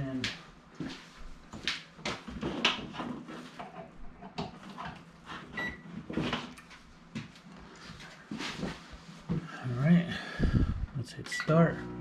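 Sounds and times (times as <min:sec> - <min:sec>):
microwave beep: 0:05.6 - 0:05.8.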